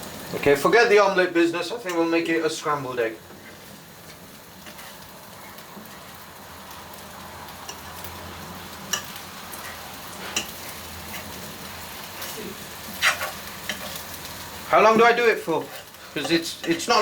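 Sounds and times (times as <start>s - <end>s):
eggs sizzling in a frying pan: 0.0s - 17.0s
fork scraping a pan: 3.3s - 6.2s, 8.9s - 14.3s, 14.9s - 17.0s
fork clinking on pan: 8.9s - 9.2s, 10.3s - 10.6s.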